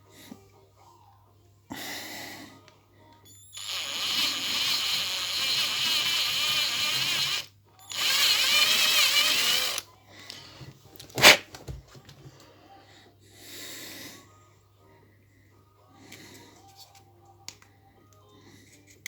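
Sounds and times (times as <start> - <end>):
electric drill running: 3.5 - 9.8.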